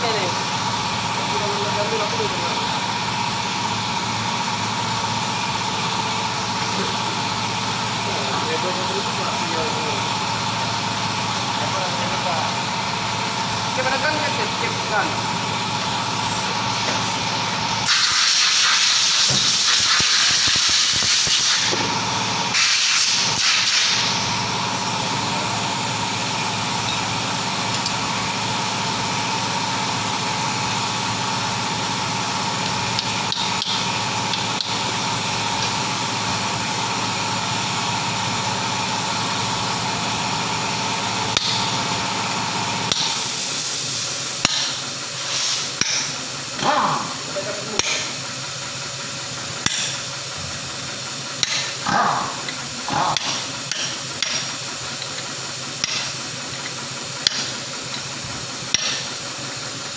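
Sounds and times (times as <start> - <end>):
steady machine hum: 0.0 - 59.9
hissing air bursts: 16.3 - 21.9, 22.5 - 24.3, 43.0 - 46.1.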